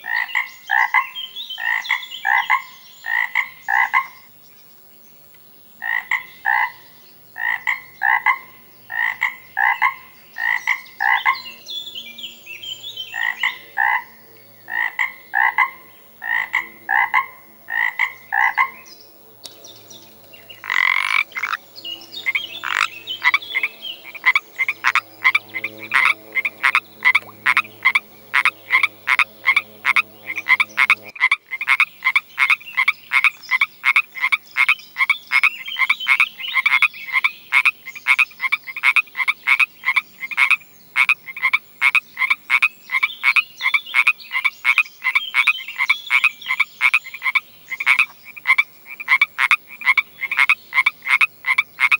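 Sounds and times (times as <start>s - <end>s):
frogs croaking: 0.0s - 4.4s, 5.3s - 11.8s, 12.7s - 51.9s.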